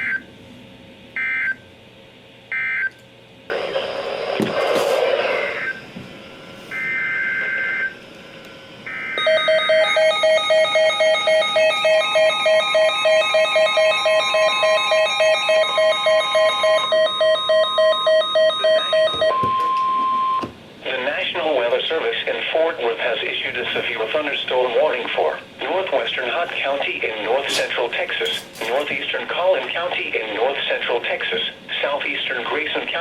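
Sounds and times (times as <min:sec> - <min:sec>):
steady warning alert tone: 0:05.2 - 0:08.0, 0:08.8 - 0:20.4
pulsing electronic alarm beeping: 0:05.3 - 0:05.9, 0:06.7 - 0:08.0, 0:08.8 - 0:20.4.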